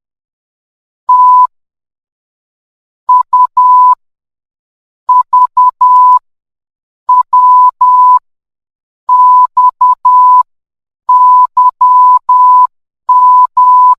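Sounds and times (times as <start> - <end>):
morse code beeps: 1.1 - 1.5, 3.1 - 4.0, 5.1 - 6.2, 7.1 - 8.2, 9.1 - 10.5, 11.1 - 13.9.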